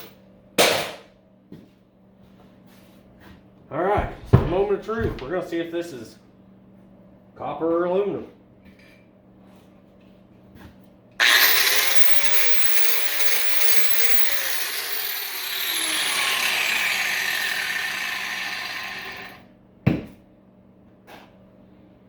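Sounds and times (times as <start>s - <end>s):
angle grinder cutting metal: 11.2s - 19.4s.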